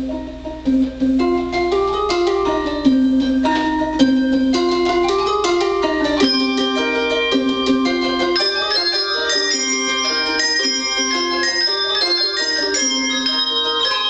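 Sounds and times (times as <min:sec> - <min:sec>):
handbell choir playing: 0:06.1 - 0:14.0.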